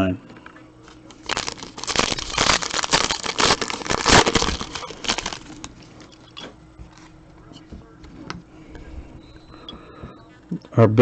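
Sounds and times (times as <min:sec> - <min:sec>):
plastic wrapping crackling: 0:01.1 - 0:06.4.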